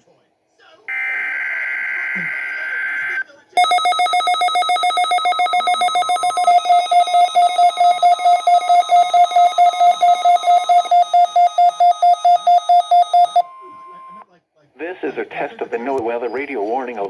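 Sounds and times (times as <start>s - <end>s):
faint steady alarm tone: 0.9s - 14.2s
radio alarm beeping: 0.9s - 14.2s.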